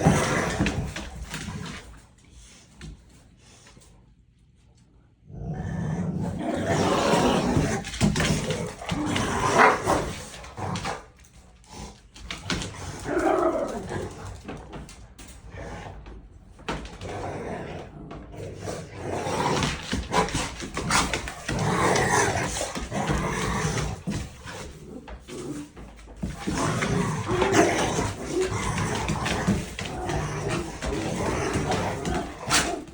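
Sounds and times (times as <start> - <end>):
dog growling and barking: 5.2 - 11.1, 12.4 - 14.7, 17.0 - 32.9.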